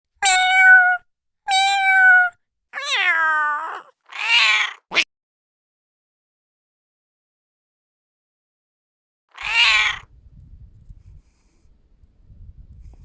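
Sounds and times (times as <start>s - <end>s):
cat meowing: 0.2s - 5.1s, 9.3s - 10.1s
cat short sharp cry: 0.2s - 5.1s, 9.4s - 10.1s.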